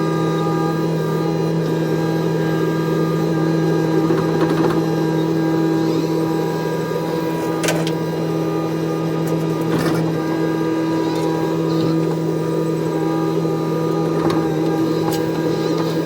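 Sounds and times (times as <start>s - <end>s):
excavator diesel engine running: 3.2s - 16.0s.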